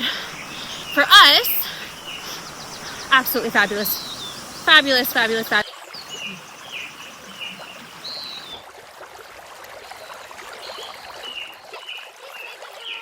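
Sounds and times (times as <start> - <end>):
small bird chirping: 0.0 - 8.6
stream water running: 0.0 - 13.0.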